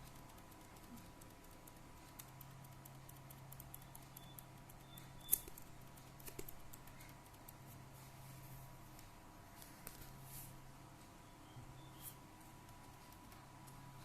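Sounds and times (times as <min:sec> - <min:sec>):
hands clicking and tapping laptop: 0:00.0 - 0:08.0, 0:12.5 - 0:14.0
faint steady hum: 0:00.0 - 0:14.0.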